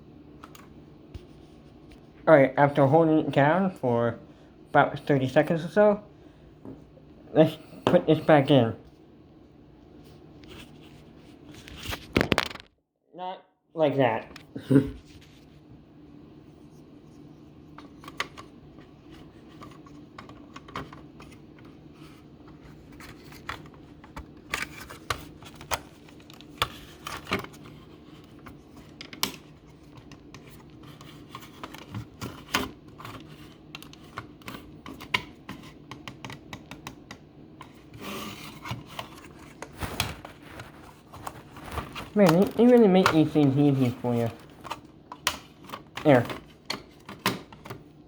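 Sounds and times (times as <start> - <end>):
plastic clicks and scrapes: 17.7 - 47.8.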